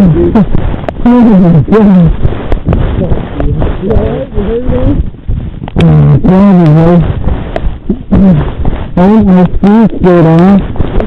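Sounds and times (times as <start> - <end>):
noisy rustle: 0.0 - 11.0
man's voice without words: 2.8 - 5.0, 8.1 - 10.7.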